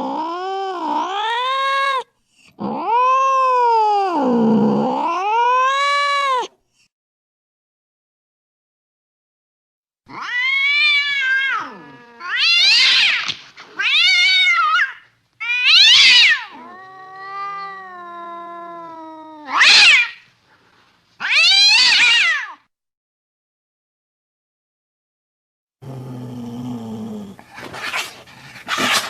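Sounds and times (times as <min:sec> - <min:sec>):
cat meowing loudly: 0:00.0 - 0:06.5, 0:10.1 - 0:20.2, 0:21.2 - 0:22.6
cat low drawn-out moan: 0:00.0 - 0:06.6, 0:10.1 - 0:12.7, 0:16.2 - 0:19.7, 0:25.8 - 0:27.6.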